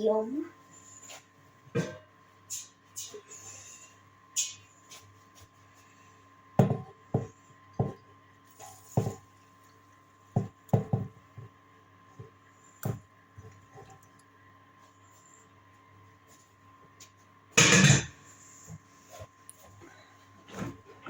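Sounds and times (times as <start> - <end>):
dishes and kettle clunking: 1.8 - 2.1, 17.6 - 18.2.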